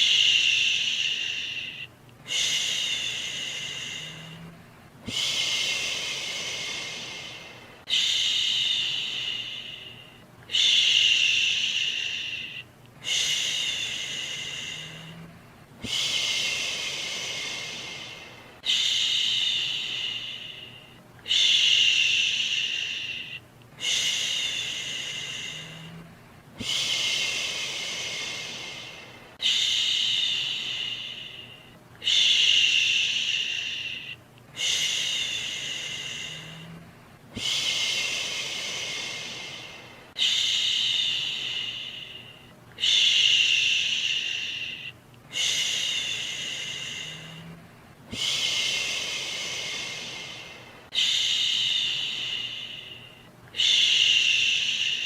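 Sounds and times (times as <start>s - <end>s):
person shushing: 0.0s - 36.8s.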